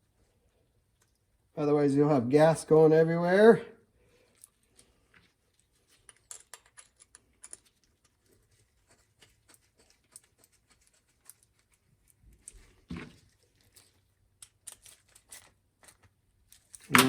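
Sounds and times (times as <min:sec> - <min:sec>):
small metal parts clicking: 0:04.2 - 0:08.3, 0:13.5 - 0:17.0.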